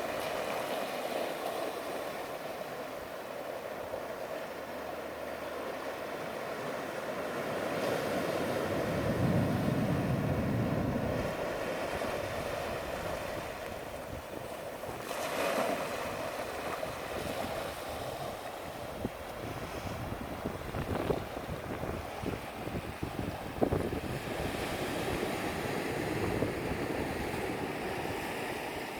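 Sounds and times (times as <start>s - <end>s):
ocean waves washing ashore: 0.0s - 28.9s
wind buffeting microphone: 8.1s - 15.1s, 16.0s - 28.9s.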